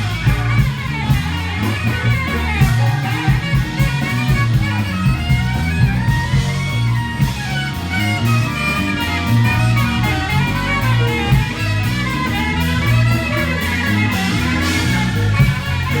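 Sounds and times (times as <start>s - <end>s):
bass line: 0.0s - 16.0s
live band playing: 0.0s - 16.0s
melodic lead line: 0.0s - 16.0s.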